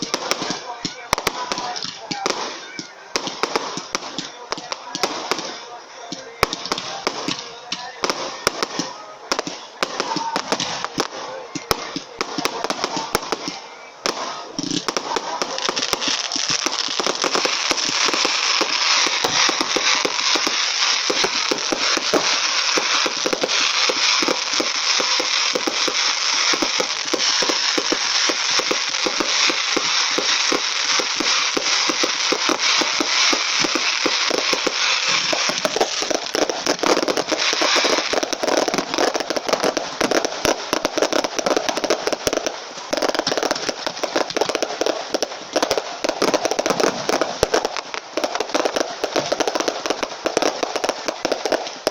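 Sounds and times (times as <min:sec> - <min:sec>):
fireworks crackling: 0:00.0 - 0:51.9.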